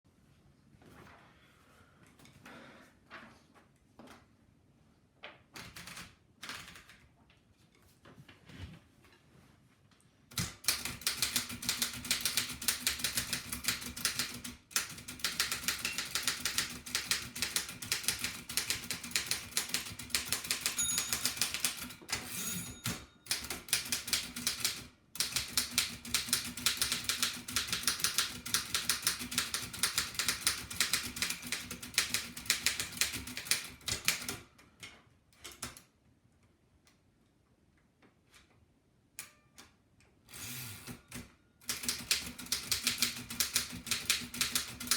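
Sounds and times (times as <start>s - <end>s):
typewriter typing fast: 5.6s - 7.0s, 10.3s - 22.0s, 23.3s - 34.4s, 41.6s - 44.9s.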